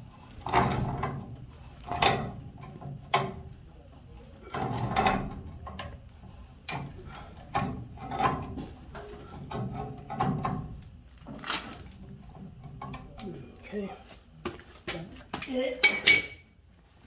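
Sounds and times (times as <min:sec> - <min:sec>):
metal tools knocking and rattling: 0:04.5 - 0:06.0, 0:15.8 - 0:16.5.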